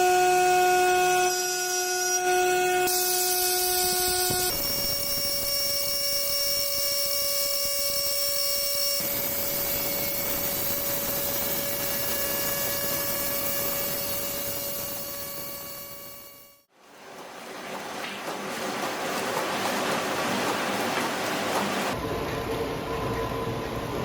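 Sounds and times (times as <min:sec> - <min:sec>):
woodworking machine whine: 0:00.0 - 0:16.6.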